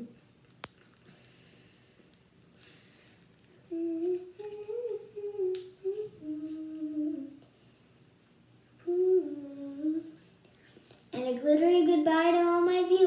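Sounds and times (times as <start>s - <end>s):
child humming: 3.7s - 7.4s, 8.8s - 10.2s.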